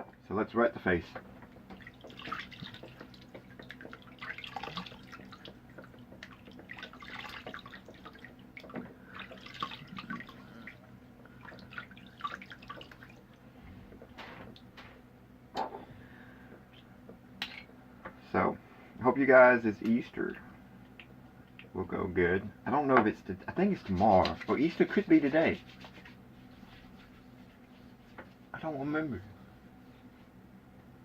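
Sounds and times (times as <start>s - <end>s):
steady low hum: 0.0s - 31.0s
water splashing on a face: 1.8s - 5.6s, 9.1s - 10.8s.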